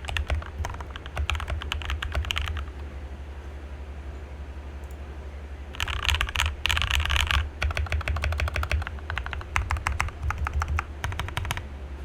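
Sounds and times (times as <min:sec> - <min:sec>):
mechanical keyboard typing: 0:00.0 - 0:02.8, 0:05.8 - 0:11.6
steady low hum: 0:00.0 - 0:12.0.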